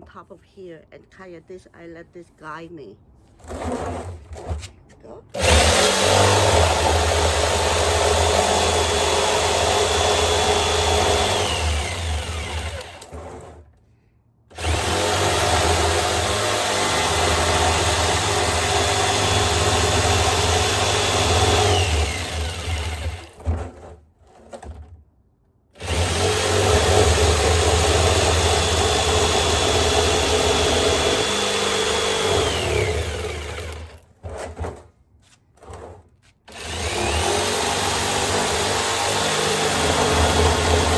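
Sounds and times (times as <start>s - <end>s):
electric jigsaw cutting metal: 5.4s - 13.6s, 14.5s - 23.6s, 25.8s - 34.0s, 36.5s - 40.9s.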